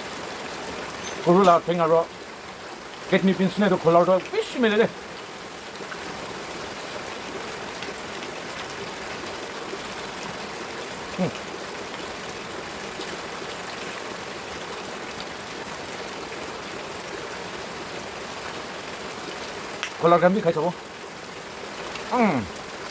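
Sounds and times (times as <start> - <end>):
steady rain: 0.0 - 22.9
short vocal sound: 11.2 - 11.4, 22.0 - 22.6.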